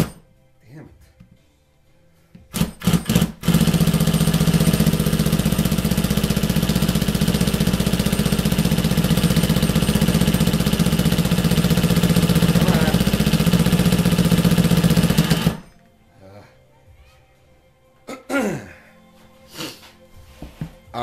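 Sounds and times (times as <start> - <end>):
impact gun hammering: 0.0 - 0.2, 2.5 - 15.7.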